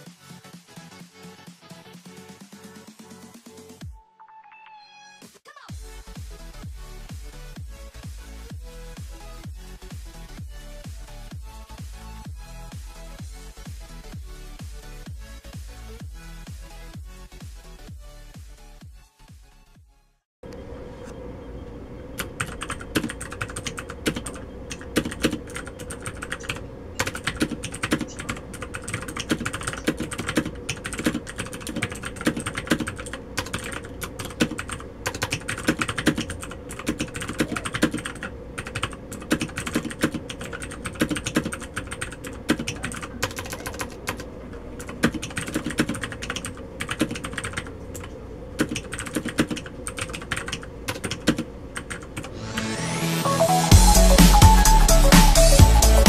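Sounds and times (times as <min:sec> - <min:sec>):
mechanical keyboard typing: 0:22.2 - 0:52.3.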